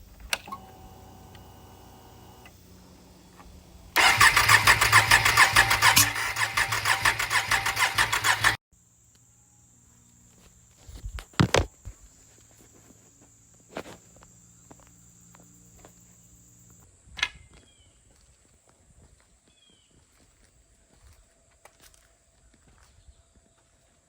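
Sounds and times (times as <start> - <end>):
engine cranking by starter: 0.0 - 8.6.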